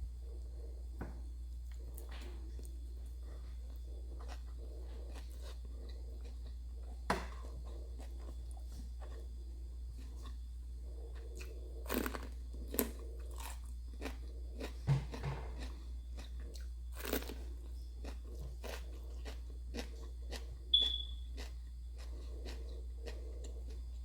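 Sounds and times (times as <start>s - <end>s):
chewing crisp fried food: 1.5s - 24.0s.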